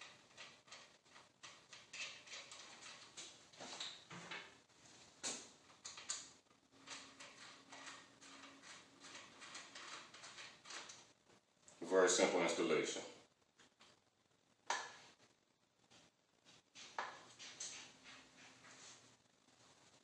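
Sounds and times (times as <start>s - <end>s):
small metal parts clicking: 5.9s - 11.0s.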